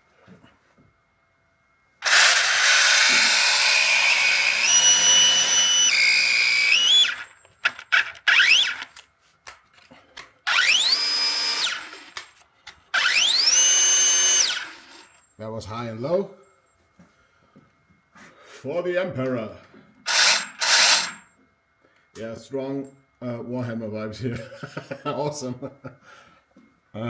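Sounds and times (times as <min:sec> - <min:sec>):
power tool motor whine: 0:02.0 - 0:09.0, 0:10.5 - 0:12.2, 0:12.9 - 0:15.2, 0:20.1 - 0:21.3.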